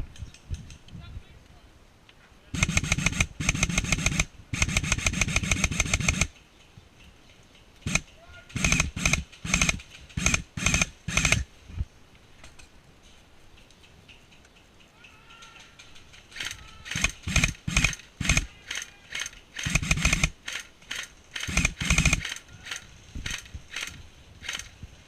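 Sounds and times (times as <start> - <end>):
airsoft gun firing bursts: 2.6 - 6.3, 7.8 - 11.5, 16.3 - 24.8.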